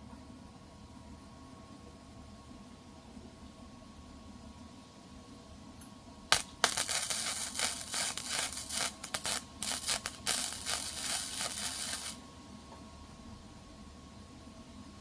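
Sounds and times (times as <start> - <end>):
welding arc crackling: 6.3 - 12.2.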